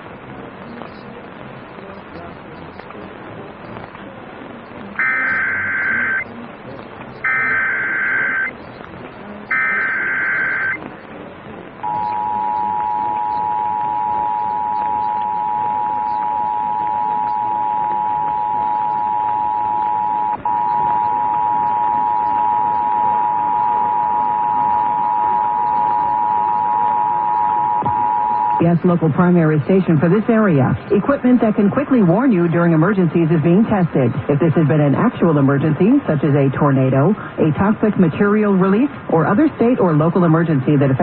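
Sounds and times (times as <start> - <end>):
buzzing digital data tones: 5.0 - 6.3, 7.2 - 8.5, 9.5 - 10.8
steady two-tone attention signal: 5.0 - 6.3, 7.2 - 8.6, 9.5 - 10.8, 11.8 - 28.7.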